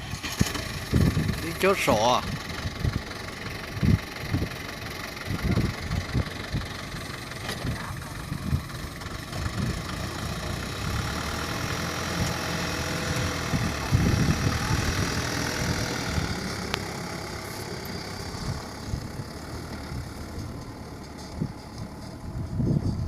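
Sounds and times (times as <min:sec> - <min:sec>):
diesel engine running: 0:00.0 - 0:23.0.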